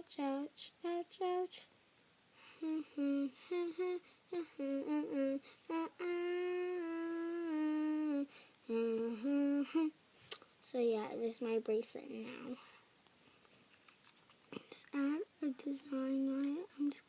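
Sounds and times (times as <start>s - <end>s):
girl humming a tune: 2.4s - 10.0s, 14.6s - 17.0s.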